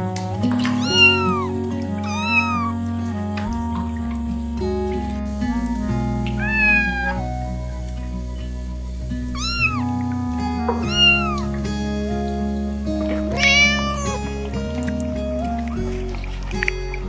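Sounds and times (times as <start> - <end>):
background music with sustained notes: 0.0 - 17.0
cat meowing: 0.8 - 2.8, 6.4 - 7.3, 9.4 - 10.1, 10.8 - 11.6, 13.3 - 15.9.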